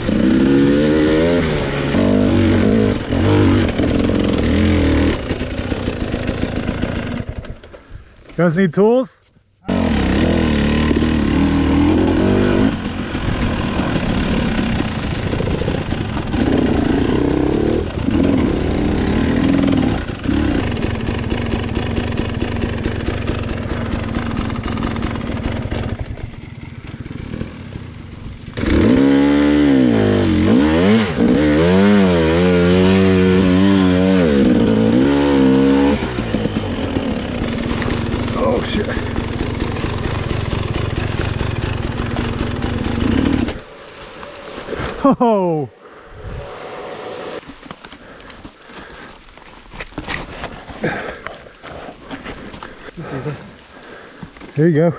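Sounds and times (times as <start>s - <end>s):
dirt bike engine revving: 0.0s - 7.6s, 9.6s - 43.8s.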